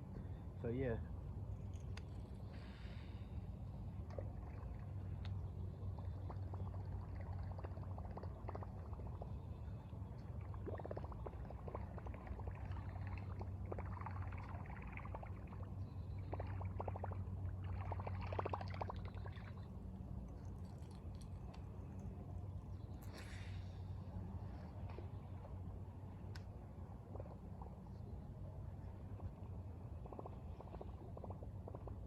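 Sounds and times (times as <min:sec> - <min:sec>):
steady low hum: 0:00.0 - 0:32.0
river water trickling and gurgling: 0:00.1 - 0:32.0.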